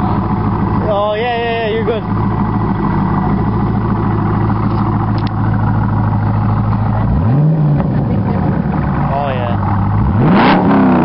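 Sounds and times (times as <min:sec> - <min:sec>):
car engine idling: 0:00.0 - 0:11.0
engine rev blip: 0:10.0 - 0:11.0.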